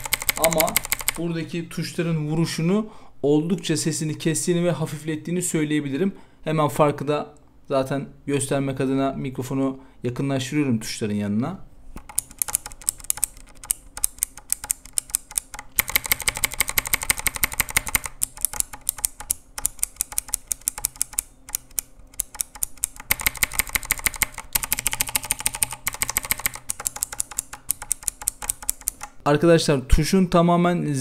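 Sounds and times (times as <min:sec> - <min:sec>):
clicky mechanical keyboard typing: 0:00.0 - 0:01.2, 0:12.0 - 0:29.2.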